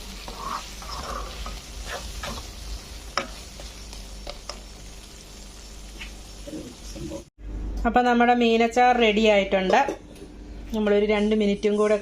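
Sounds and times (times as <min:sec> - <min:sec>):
fish sizzling in a pan: 0:00.0 - 0:07.3.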